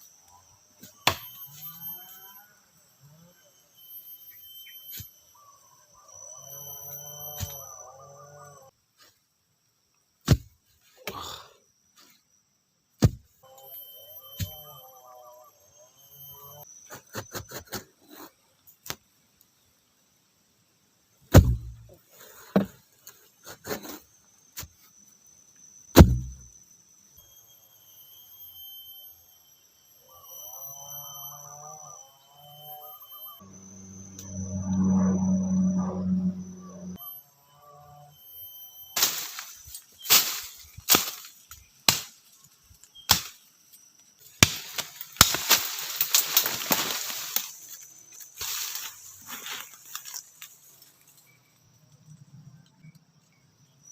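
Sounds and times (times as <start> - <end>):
faint insects droning: 0.0 - 53.9
wood chopping: 1.0 - 1.3, 13.0 - 13.2, 21.3 - 21.8, 26.0 - 26.5, 41.9 - 42.1, 44.4 - 46.8
branches cracking and rustling: 44.4 - 51.2.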